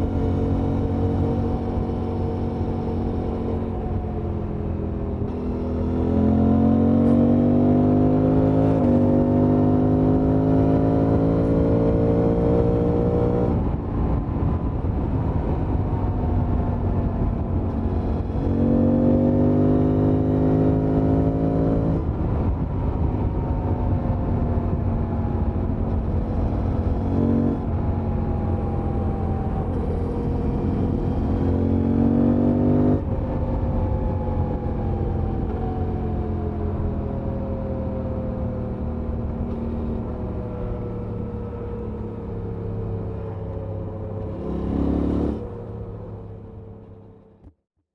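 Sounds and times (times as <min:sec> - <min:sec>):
motorcycle accelerating hard: 0:00.0 - 0:47.1
wind noise on microphone: 0:11.2 - 0:40.8.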